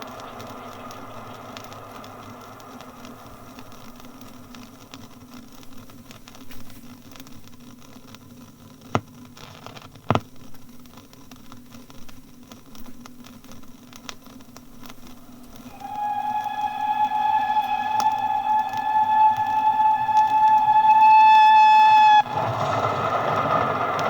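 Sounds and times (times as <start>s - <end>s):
disc surface hiss and hum: 0.0s - 7.5s
record crackle: 0.0s - 24.0s.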